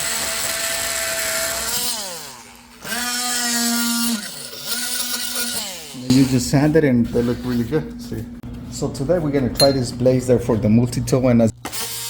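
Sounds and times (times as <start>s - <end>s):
oscillating saw cutting wood: 0.0s - 6.2s.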